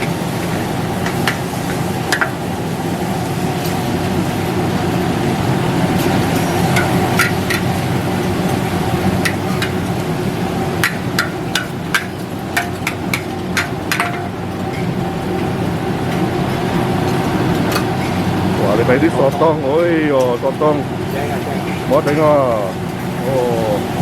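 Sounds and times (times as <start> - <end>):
steady background noise: 0.0 - 24.0
metal spatula clanking on wok: 10.8 - 14.8.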